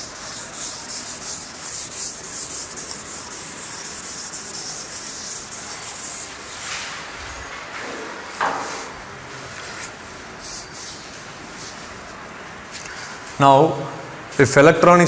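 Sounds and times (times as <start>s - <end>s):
pen scratching on paper: 0.0s - 6.6s.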